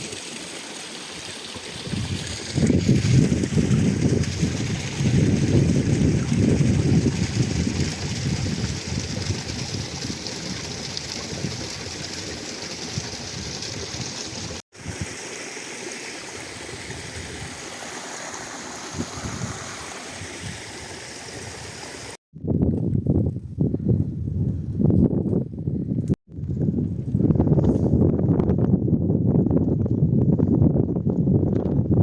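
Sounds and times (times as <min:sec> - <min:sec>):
stream water rushing: 0:00.0 - 0:06.6, 0:10.1 - 0:22.2.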